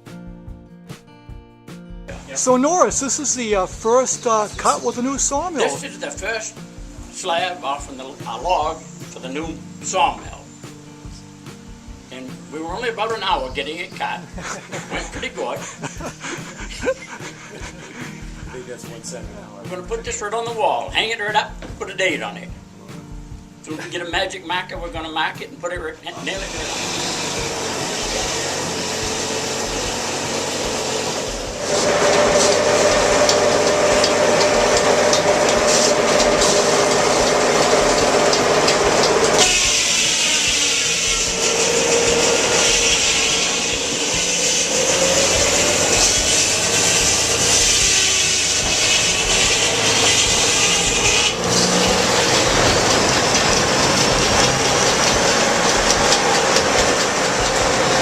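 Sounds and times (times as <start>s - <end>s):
sawmill sawing through a log: 26.2s - 58.0s.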